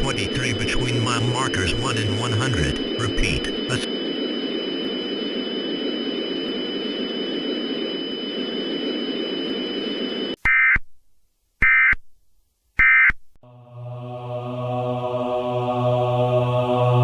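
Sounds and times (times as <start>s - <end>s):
screechy digital data bursts: 0.0s - 4.0s
static hiss with high whine: 0.0s - 10.8s.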